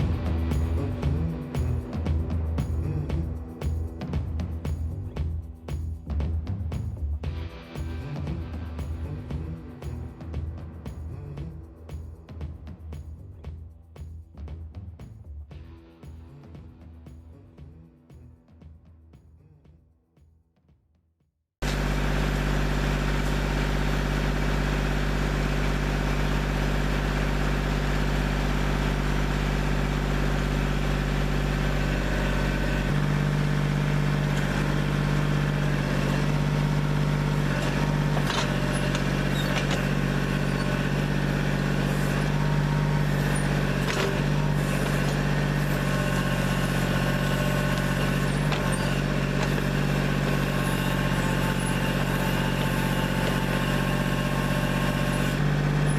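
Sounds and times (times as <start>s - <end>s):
diesel engine running: 0.0s - 18.3s, 21.6s - 55.9s.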